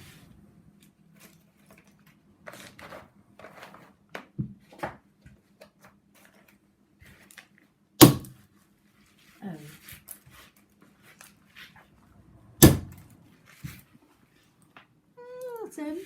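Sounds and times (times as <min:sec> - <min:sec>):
dull knock: 0:12.6 - 0:12.9.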